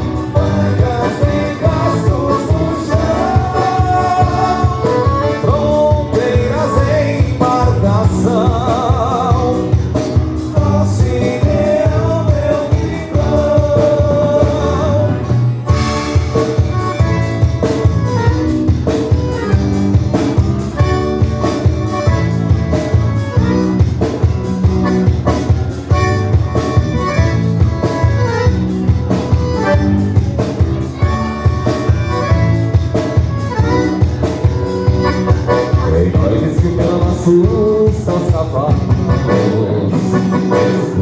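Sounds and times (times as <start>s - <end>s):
drum beat: 0.0s - 15.0s
live band instrumental: 0.0s - 41.0s.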